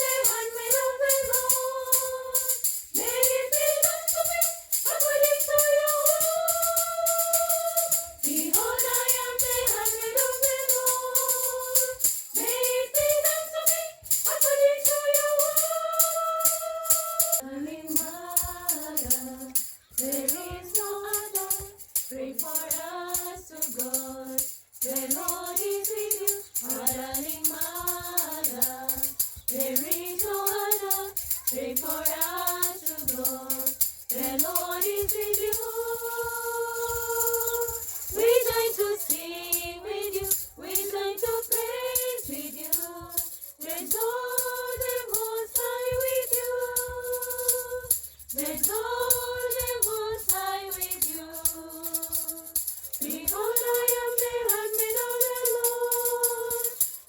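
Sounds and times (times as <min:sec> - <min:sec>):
person singing a hymn: 0:00.0 - 0:57.0
tambourine shaken: 0:00.0 - 0:57.0.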